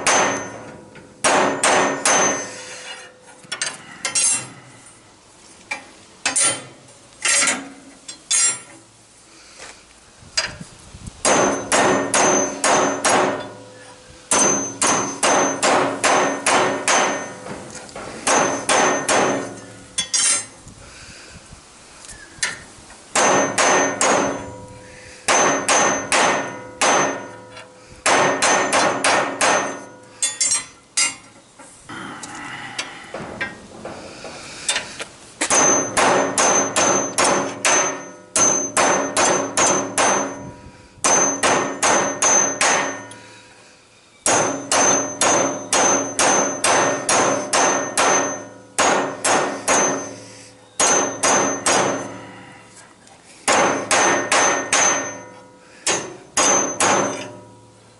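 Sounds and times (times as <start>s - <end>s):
hammer striking metal: 0.0s - 4.5s, 11.2s - 13.7s, 14.3s - 20.5s, 23.2s - 31.2s, 35.4s - 43.2s, 44.2s - 50.2s, 50.8s - 52.3s, 53.5s - 57.7s
metal ringing: 0.0s - 4.5s, 11.2s - 20.6s, 23.2s - 31.3s, 35.4s - 43.4s, 44.2s - 52.3s, 53.5s - 57.9s.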